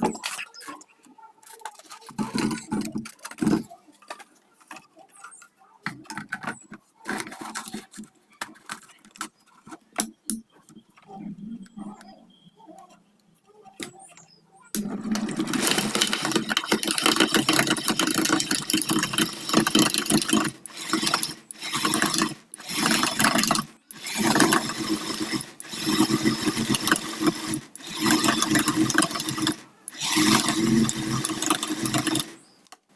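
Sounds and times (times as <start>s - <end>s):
mixer grinder motor running: 14.8s - 32.4s.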